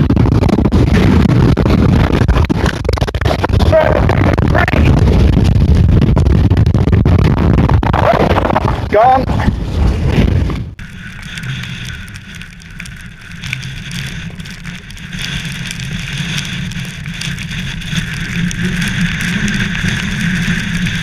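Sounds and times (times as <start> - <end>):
strong wind on microphone: 0.0 - 12.9.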